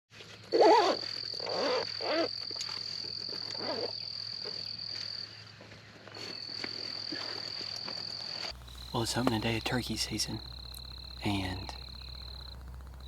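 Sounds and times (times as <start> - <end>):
frog calls rising and falling: 8.5 - 13.0
high-pitched trill: 8.5 - 13.0.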